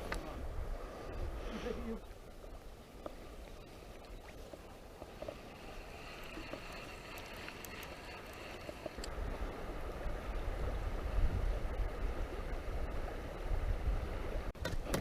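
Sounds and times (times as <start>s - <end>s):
river water running: 0.0s - 14.5s
faint clicks: 3.0s - 9.2s.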